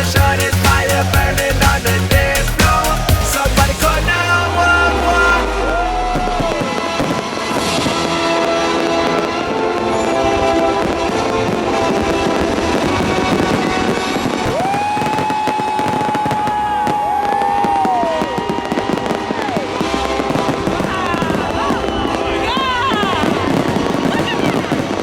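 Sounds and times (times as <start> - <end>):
pop song over loudspeakers: 0.0 - 7.2
fireworks banging and crackling: 0.0 - 25.0.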